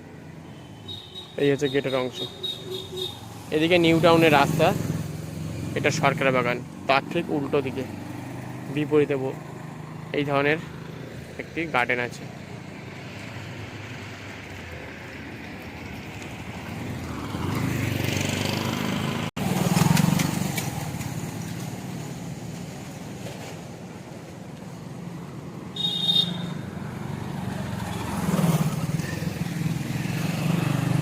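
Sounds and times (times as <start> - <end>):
motor vehicles passing: 1.7 - 31.0.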